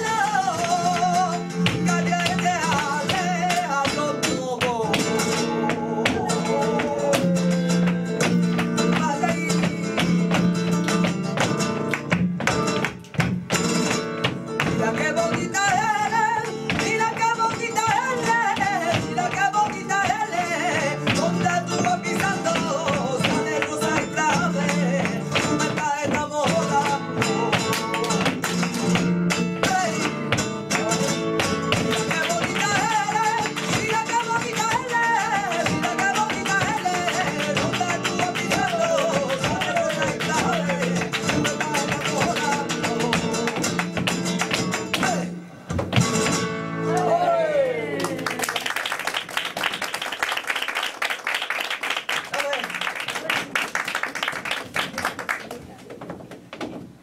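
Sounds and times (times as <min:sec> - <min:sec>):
flamenco guitar strumming: 0:00.0 - 0:48.7.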